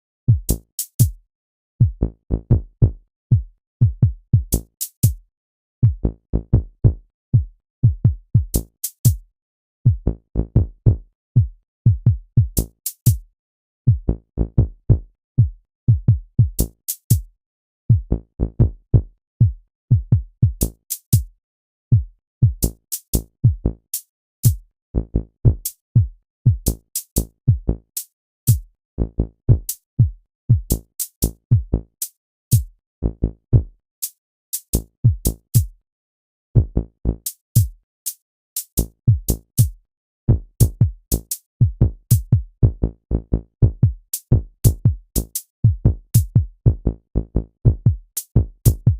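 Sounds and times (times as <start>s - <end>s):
drum machine kick thumps: 0.3s - 1.2s, 1.8s - 5.2s, 5.8s - 9.2s, 9.9s - 13.2s, 13.9s - 17.3s, 17.9s - 20.6s, 21.9s - 22.7s, 24.4s - 24.6s, 25.5s - 26.7s, 28.5s - 28.7s, 29.5s - 30.8s, 31.5s - 31.7s, 32.5s - 32.7s, 35.0s - 35.8s, 36.6s - 36.8s, 37.6s - 37.8s, 39.1s - 42.8s, 43.6s - 46.8s, 47.6s - 48.9s.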